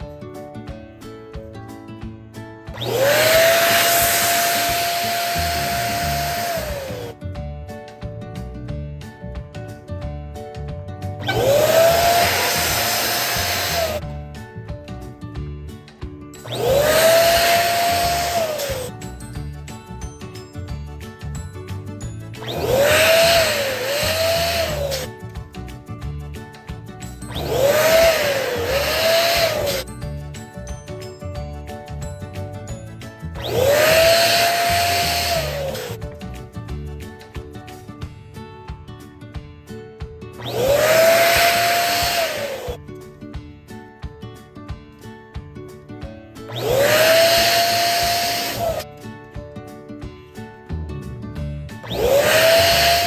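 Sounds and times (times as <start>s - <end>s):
upbeat background music: 0.0s - 53.0s
electric balloon pump whining: 2.8s - 7.2s, 11.2s - 14.0s, 16.4s - 19.0s, 22.3s - 25.1s, 27.2s - 29.9s, 33.4s - 36.0s, 40.4s - 42.8s, 46.5s - 48.8s, 51.8s - 53.0s.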